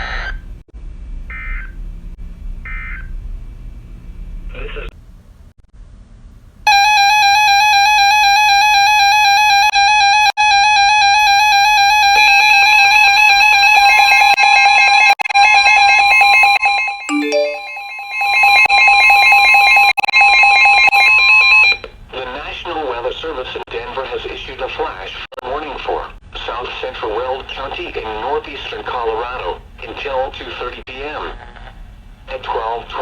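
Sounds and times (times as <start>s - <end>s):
higher alarm tone: 6.7s - 9.7s, 15.5s - 19.9s
electronic alarm tone: 6.7s - 21.8s.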